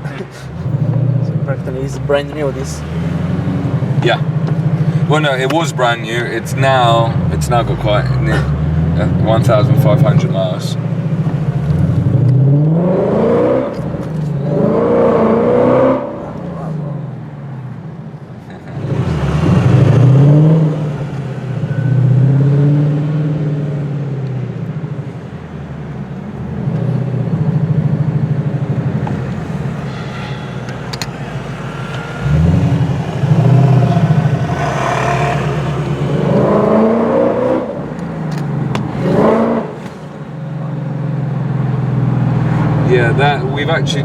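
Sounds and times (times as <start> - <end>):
car engine accelerating: 0.0 - 16.8, 18.6 - 24.1, 28.4 - 40.4.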